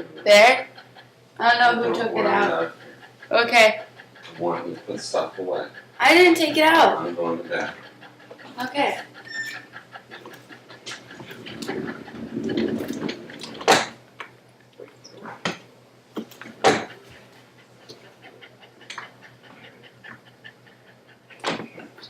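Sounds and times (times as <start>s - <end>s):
sharp knocks: 12.8s - 14.0s, 16.2s - 17.0s.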